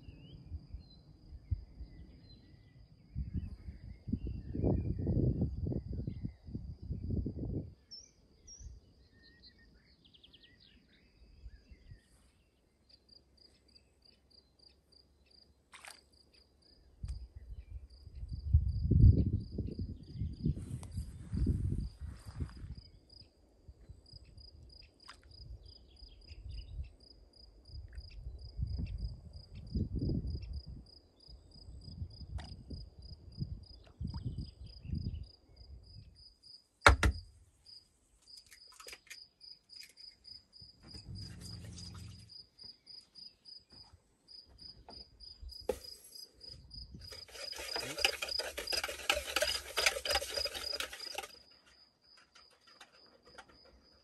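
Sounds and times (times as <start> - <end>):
sharp knock: 36.9 - 37.2
insect chirping: 37.6 - 54.0.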